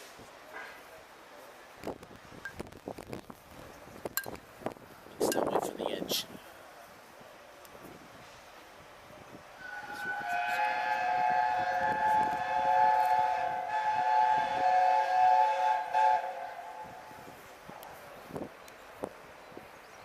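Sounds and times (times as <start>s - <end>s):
steam locomotive chime whistle: 9.6s - 17.1s.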